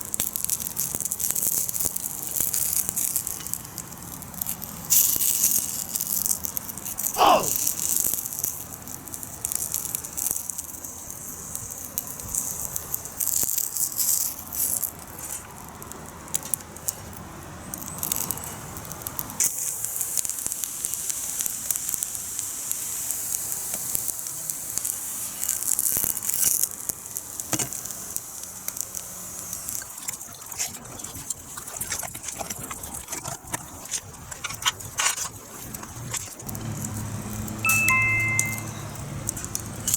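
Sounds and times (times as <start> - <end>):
wood fire crackling and popping: 17.7 - 30.6
falling whistle-like tone: 37.6 - 38.9.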